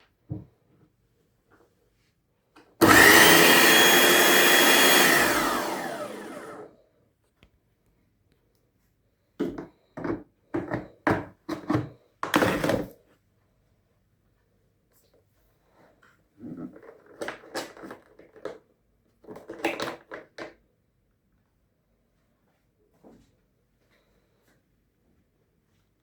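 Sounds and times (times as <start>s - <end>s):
pressure washer motor running: 2.8s - 6.7s.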